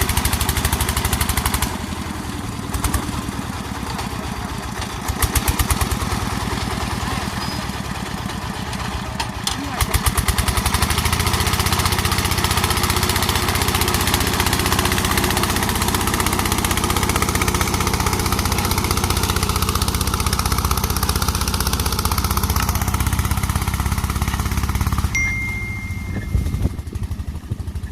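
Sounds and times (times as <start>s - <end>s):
engine puttering: 0.0s - 27.9s
thin steady high tone: 25.1s - 26.9s.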